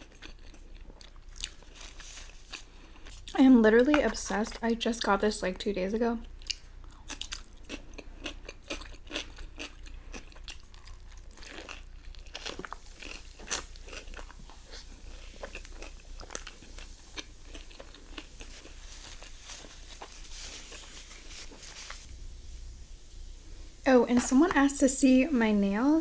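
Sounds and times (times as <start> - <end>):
chewing crispy fried food: 0.0 - 3.4, 6.2 - 22.1.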